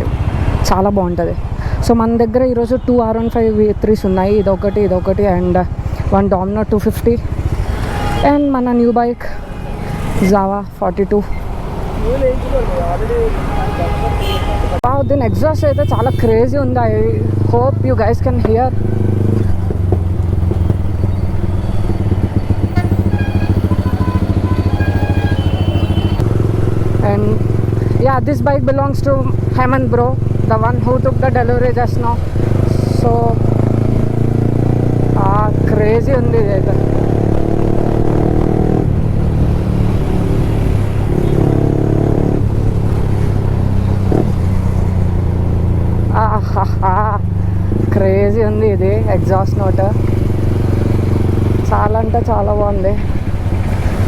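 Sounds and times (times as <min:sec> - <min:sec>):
motorcycle idling: 0:14.2 - 0:31.6.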